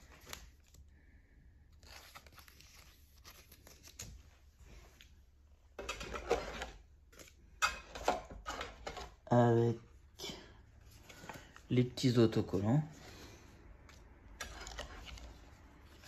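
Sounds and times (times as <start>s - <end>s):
packaging rustling and tearing: 14.3s - 16.0s.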